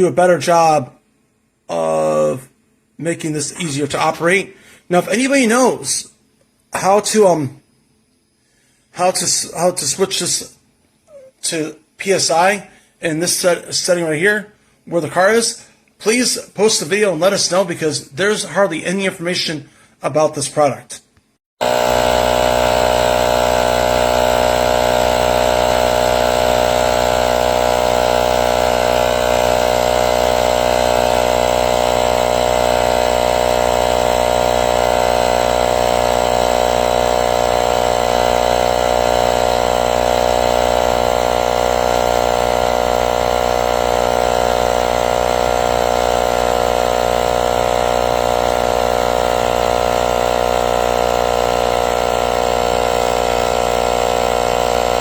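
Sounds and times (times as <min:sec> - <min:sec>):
electric air compressor buzzing: 0:21.6 - 0:55.0.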